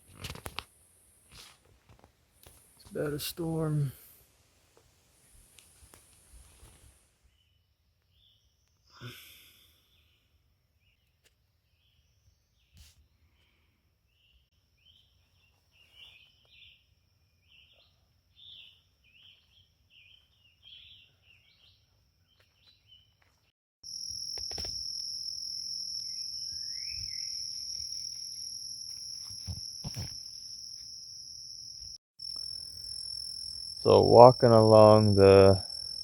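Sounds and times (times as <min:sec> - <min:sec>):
insects chirping: 0:14.1 - 0:36.0
high-pitched insect trill: 0:23.8 - 0:36.0.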